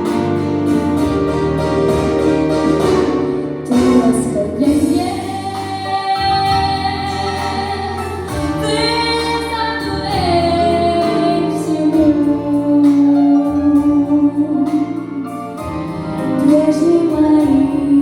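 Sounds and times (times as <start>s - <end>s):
backing track music: 0.0s - 18.0s
girl singing with vibrato: 3.7s - 15.0s, 16.4s - 18.0s.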